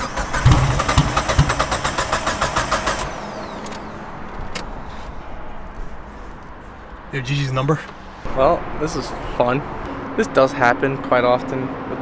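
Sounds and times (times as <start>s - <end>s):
engine coughing: 0.0s - 3.7s
engine starter cranking: 0.0s - 4.7s.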